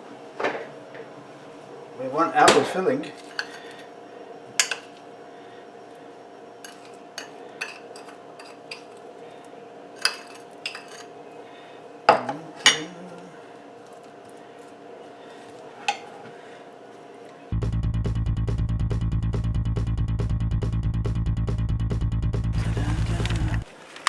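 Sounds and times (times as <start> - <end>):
steady low hum: 3.0 - 23.7
utensils clinking against dishes: 3.1 - 3.9, 4.6 - 5.0, 6.6 - 9.1, 10.0 - 11.2, 12.1 - 13.2, 15.4 - 16.3.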